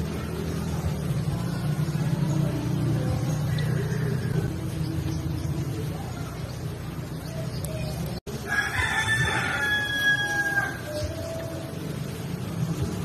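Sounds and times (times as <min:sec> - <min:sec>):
rooster crowing: 0:03.6 - 0:04.5, 0:08.4 - 0:11.1.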